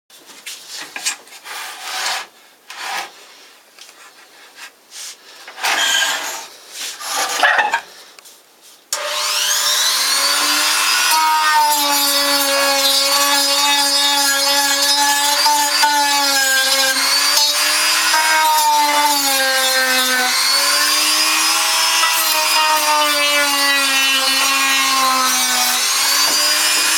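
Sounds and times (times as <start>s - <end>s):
scraping and rubbing on wood: 0.8s - 3.2s, 4.0s - 7.9s
power tool motor running: 9.0s - 11.8s, 12.4s - 26.9s.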